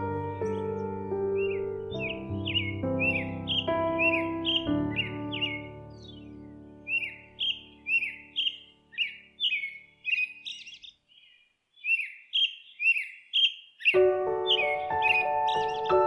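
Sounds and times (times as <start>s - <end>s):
held piano-like chord: 0.0s - 9.0s, 14.0s - 16.0s
bird chirping: 0.0s - 16.0s.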